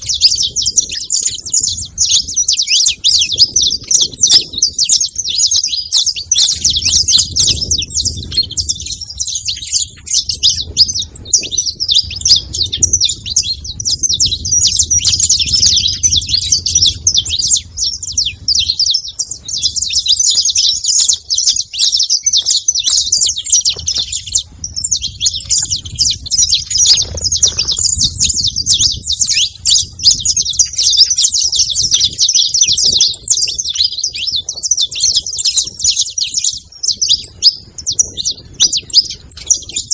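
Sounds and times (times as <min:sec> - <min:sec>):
finches chirping: 0:00.0 - 0:39.9
faint low rumble: 0:06.3 - 0:20.4, 0:23.1 - 0:34.7.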